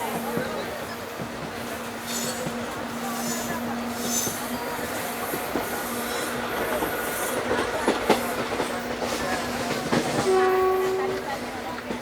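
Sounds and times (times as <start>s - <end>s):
train coach rolling rumble: 0.0s - 12.0s.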